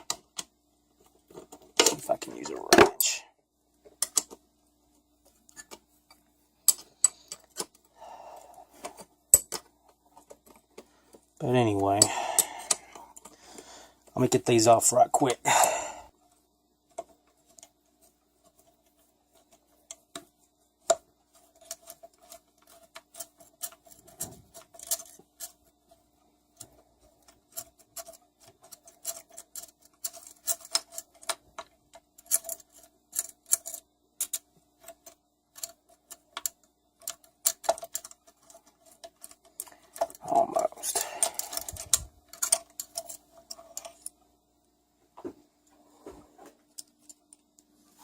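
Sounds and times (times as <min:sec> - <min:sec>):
faint steady hum: 0:00.0 - 0:48.0.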